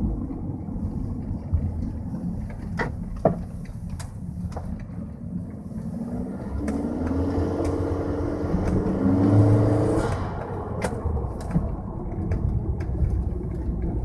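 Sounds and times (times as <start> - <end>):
road noise inside car: 0.0 - 14.0
car engine accelerating: 4.7 - 14.0.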